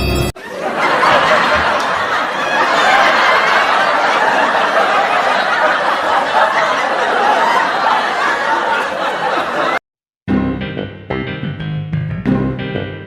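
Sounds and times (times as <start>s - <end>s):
people laughing and snickering: 0.4s - 9.8s.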